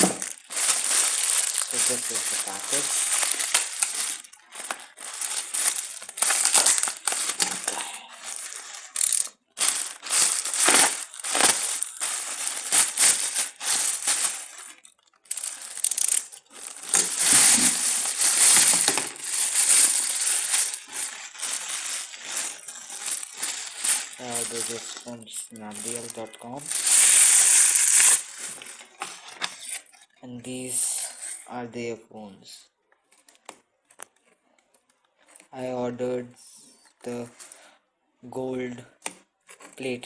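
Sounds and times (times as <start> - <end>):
plastic and cardboard packaging rustling: 0.0 - 30.0.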